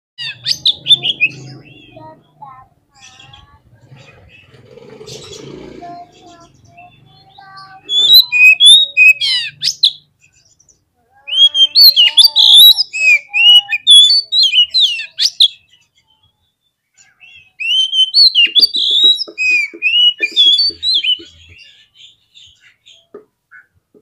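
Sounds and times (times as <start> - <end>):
bird singing loud whistles: 7.7 - 10.0, 11.3 - 15.6, 17.6 - 21.2.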